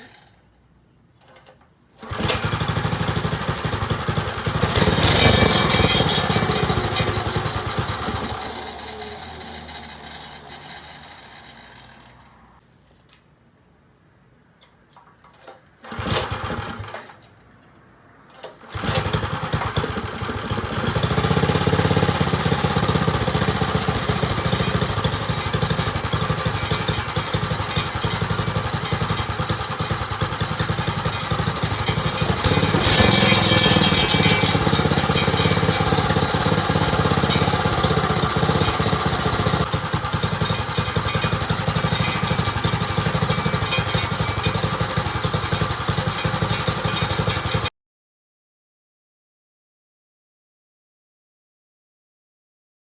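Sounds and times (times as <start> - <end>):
small engine starting and running: 2.0 - 12.6, 15.8 - 17.3, 18.4 - 47.7.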